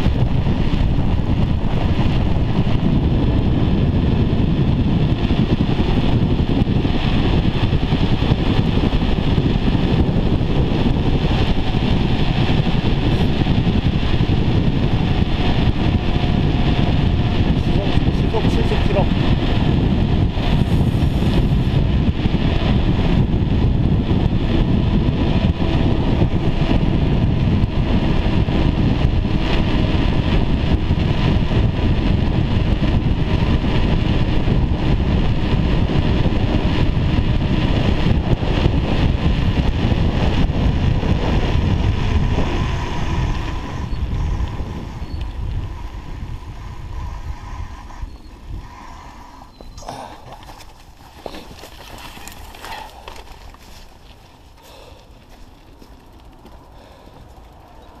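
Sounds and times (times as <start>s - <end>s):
wind buffeting microphone: 0.0s - 58.0s
tyres rolling over snow: 49.9s - 58.0s.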